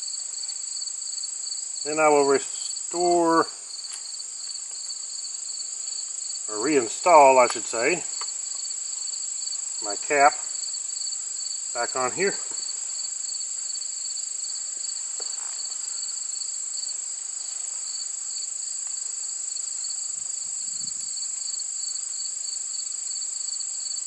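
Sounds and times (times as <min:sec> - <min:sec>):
crickets chirping: 0:00.0 - 0:24.0
faint handling sounds: 0:15.1 - 0:16.0.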